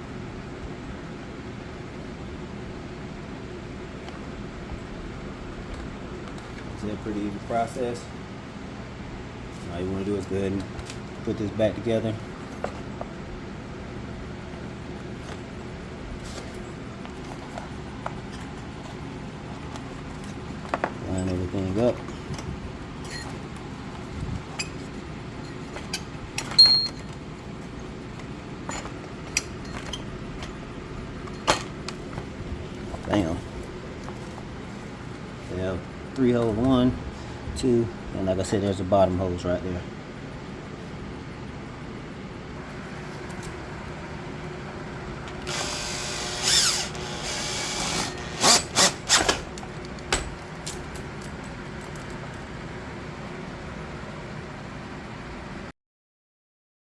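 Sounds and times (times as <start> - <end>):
tools and parts clicking and knocking: 25.6 - 27.2, 28.1 - 30.6, 31.2 - 32.0, 45.5 - 52.2
power drill running: 45.4 - 49.6.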